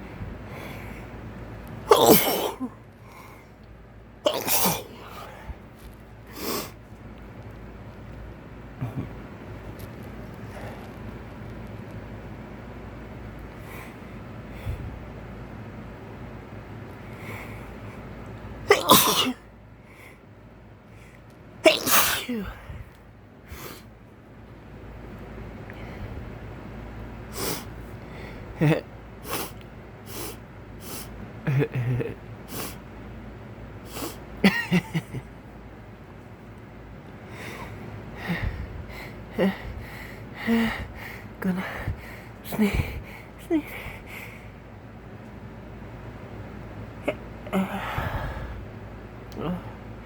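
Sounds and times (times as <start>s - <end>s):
man sneezing: 1.9s - 2.7s, 4.3s - 5.1s, 18.7s - 19.4s, 21.6s - 22.7s
soft breathy sound: 47.5s - 48.7s.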